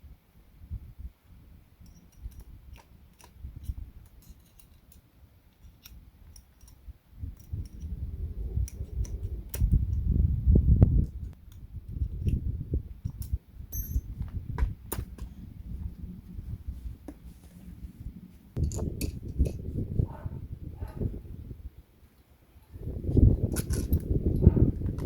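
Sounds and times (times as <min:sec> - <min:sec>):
small hand tools clicking: 0:01.8 - 0:06.8, 0:07.4 - 0:07.9.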